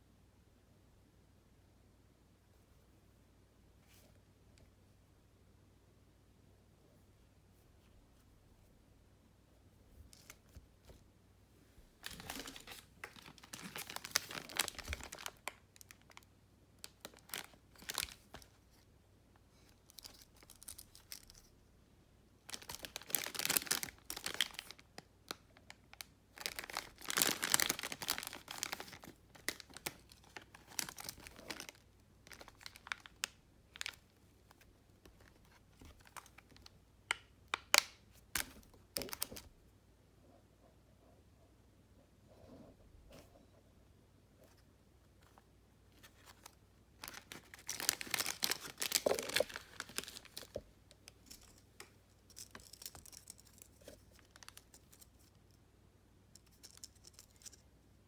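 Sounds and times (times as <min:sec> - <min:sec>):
plastic packaging crinkling: 0:12.0 - 0:18.6, 0:19.7 - 0:21.5, 0:22.5 - 0:39.4, 0:46.0 - 0:55.3.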